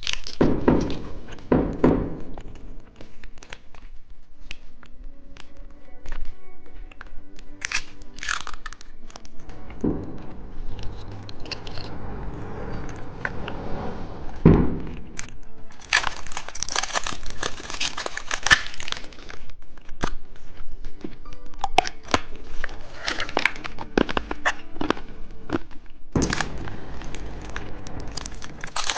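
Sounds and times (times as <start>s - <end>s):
plastic wrapper crinkling: 0.0s - 0.4s, 7.5s - 9.4s, 15.7s - 20.2s.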